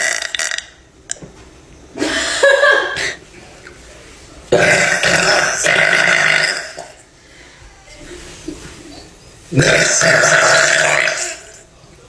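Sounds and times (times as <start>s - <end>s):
woman burping: 4.5s - 7.0s, 9.6s - 11.6s.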